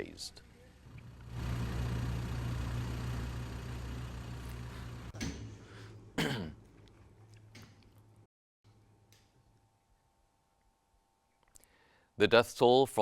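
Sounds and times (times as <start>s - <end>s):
heavy vehicle engine humming: 0.9s - 5.2s.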